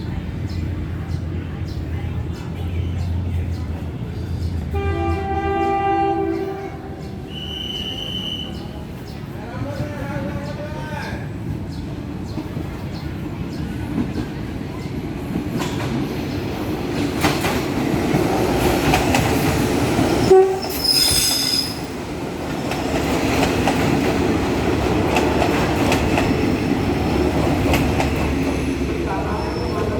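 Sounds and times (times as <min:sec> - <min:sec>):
train rumbling with wheel clatter: 0:00.0 - 0:29.9
shrill high squeal: 0:20.6 - 0:22.0.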